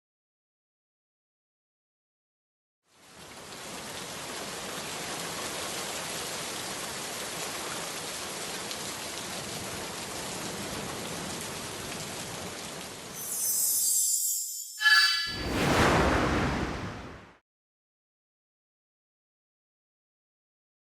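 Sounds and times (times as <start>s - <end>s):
steady rain: 2.9s - 13.2s.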